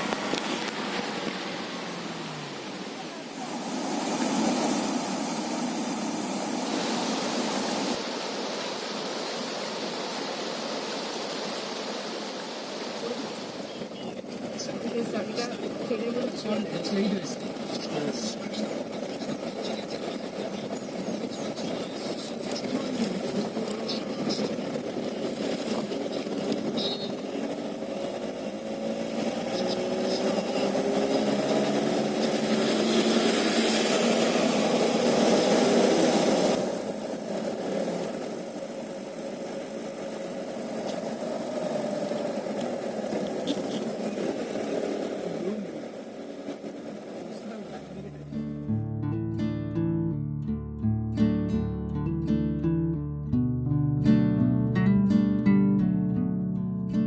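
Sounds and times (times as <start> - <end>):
road hiss: 0.0 - 48.7
vehicle engine running: 13.0 - 49.0.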